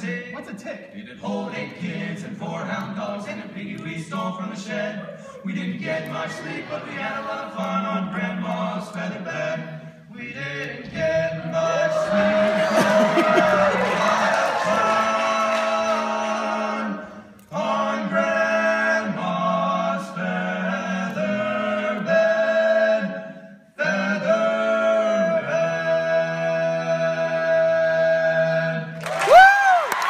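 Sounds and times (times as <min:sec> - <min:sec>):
male quartet singing a cappella: 0:00.9 - 0:29.0
audience member whooping: 0:29.2 - 0:30.0.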